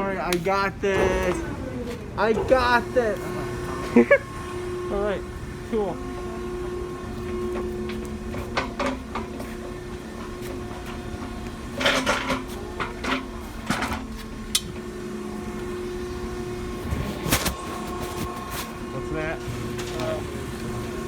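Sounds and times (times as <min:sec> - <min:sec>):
baler machine hum: 0:00.0 - 0:21.0
metal clanks and rattles: 0:06.6 - 0:15.9.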